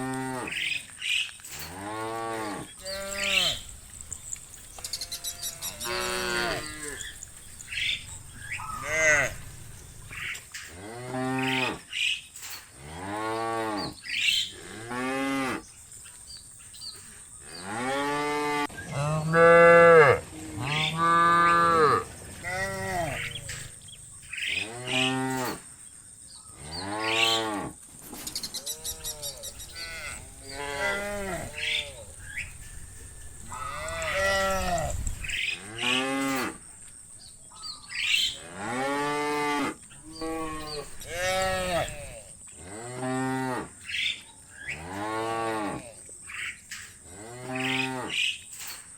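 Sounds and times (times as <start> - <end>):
cows mooing: 0.0 - 0.7, 1.6 - 11.8, 17.4 - 25.6, 28.6 - 36.7, 38.0 - 43.8, 47.1 - 48.3.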